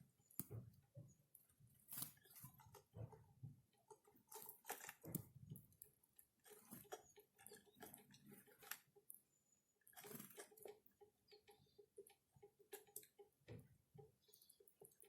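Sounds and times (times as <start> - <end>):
birds pecking seeds: 0.0 - 15.0
faint bird chirp: 6.7 - 13.3, 14.0 - 15.0.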